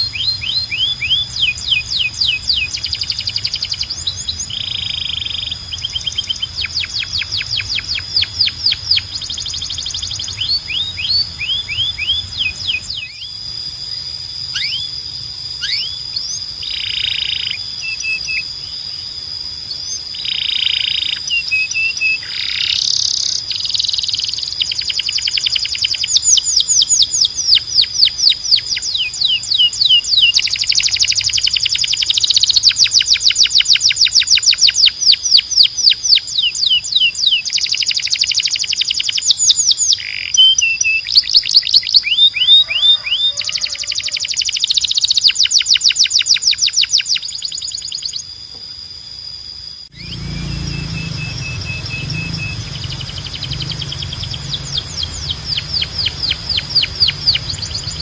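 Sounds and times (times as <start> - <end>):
canary singing trills: 0.0 - 58.0.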